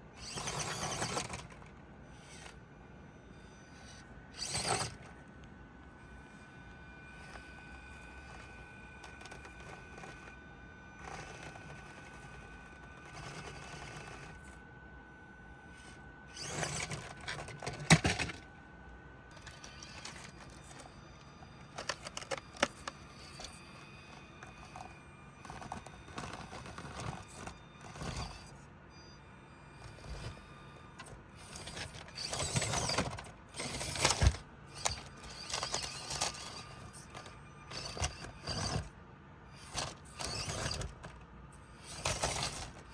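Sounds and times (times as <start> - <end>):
small electric motor and gears: 0.0 - 42.9.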